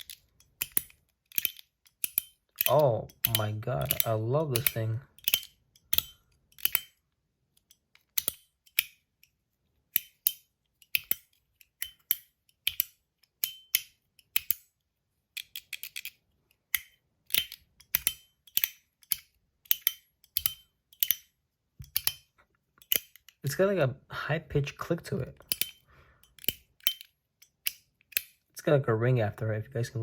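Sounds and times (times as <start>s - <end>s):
fidget clicker clicking: 0.0s - 7.0s, 7.6s - 9.0s, 15.4s - 22.2s, 25.4s - 28.3s.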